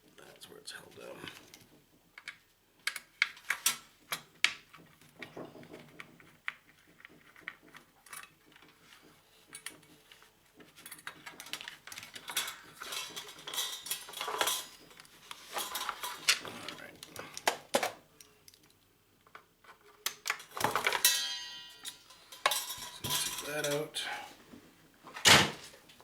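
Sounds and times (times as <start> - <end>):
metal parts and tools clinking: 10.7 - 18.7, 19.7 - 24.0.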